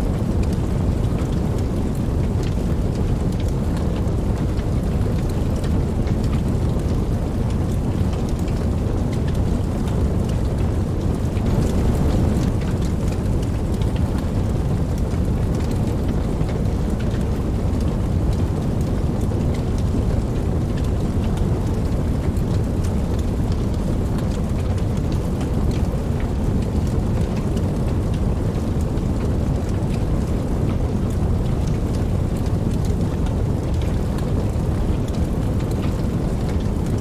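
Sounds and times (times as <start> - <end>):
steady rain falling: 0.0 - 37.0
rain drop taps: 0.1 - 37.0
distant thunder rumble: 9.8 - 16.4.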